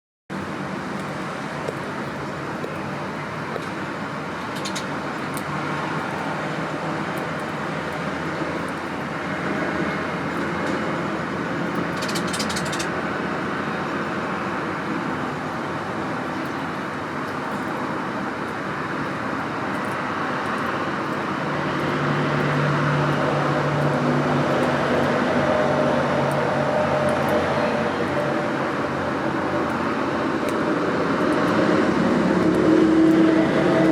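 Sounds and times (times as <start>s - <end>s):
traffic noise: 0.3s - 33.9s
low engine hum: 0.4s - 33.9s.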